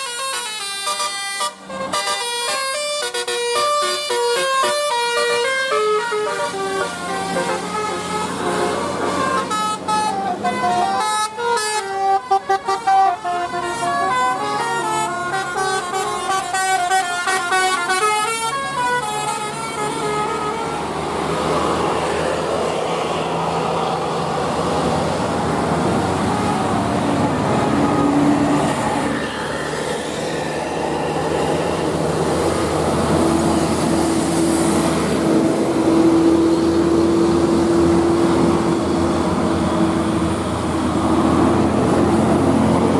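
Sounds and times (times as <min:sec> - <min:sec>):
multi-tone air horn melody: 0:00.0 - 0:21.1
bus engine: 0:00.0 - 0:42.9
traffic noise: 0:00.0 - 0:42.9.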